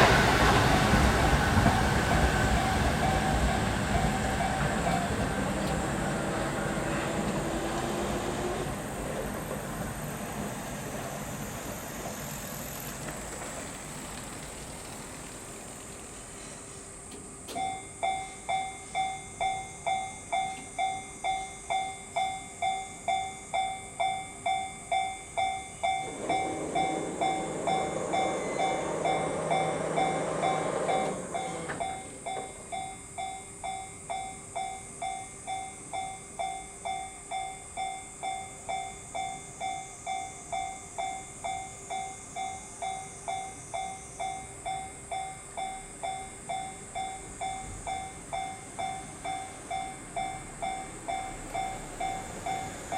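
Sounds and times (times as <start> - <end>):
level-crossing warning bell: 0.0 - 10.9, 17.5 - 52.9
train passing: 0.0 - 52.9.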